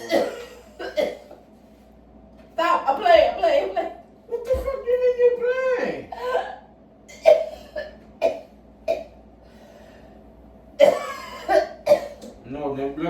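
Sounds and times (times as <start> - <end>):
woman coughing: 0.0 - 1.4, 6.1 - 9.2, 10.8 - 12.3.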